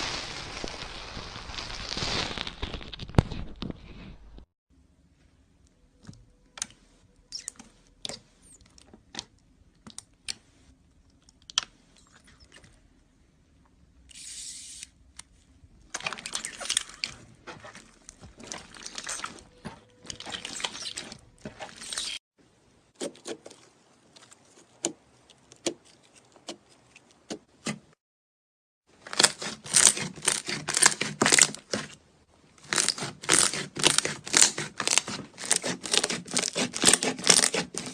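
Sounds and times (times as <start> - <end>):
crunchy slime squeezed by hand: 0.0 - 3.6.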